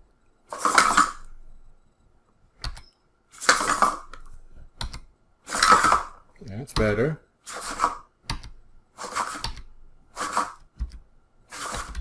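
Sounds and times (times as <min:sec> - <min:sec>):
robot servo clattering: 0:11.5 - 0:12.0.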